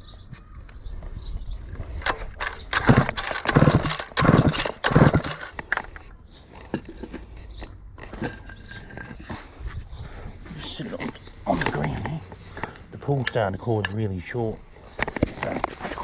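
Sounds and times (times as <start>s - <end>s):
recoil starter rope rasping: 1.9s - 5.8s
chainsaw engine cranking: 1.9s - 6.0s.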